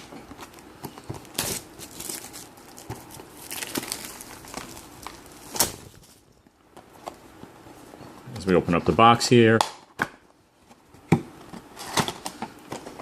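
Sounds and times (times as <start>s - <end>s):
packaging crinkling and tearing: 0.0s - 6.4s.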